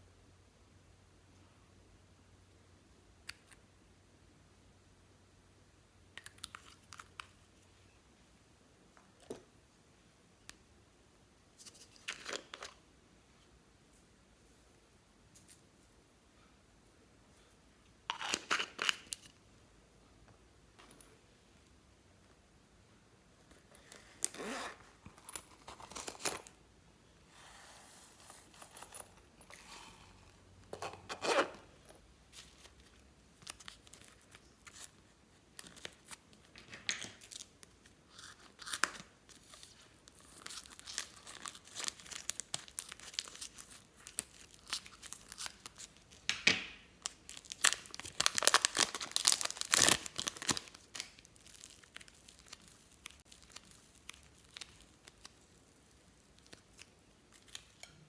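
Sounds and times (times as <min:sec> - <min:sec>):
slime crackling and tearing: 0:47.0 - 0:57.7.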